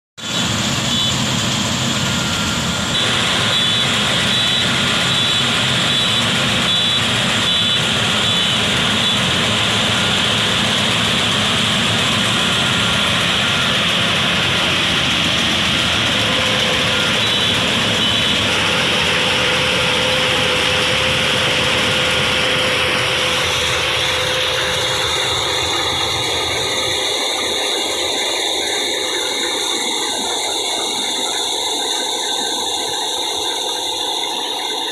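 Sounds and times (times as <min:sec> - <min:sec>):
harvesting machine running: 0:00.2 - 0:34.9.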